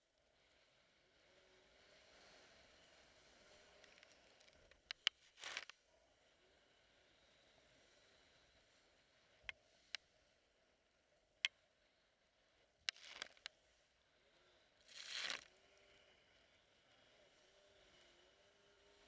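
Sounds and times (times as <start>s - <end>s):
sharp clicks: 4.8s - 5.7s, 12.9s - 13.5s.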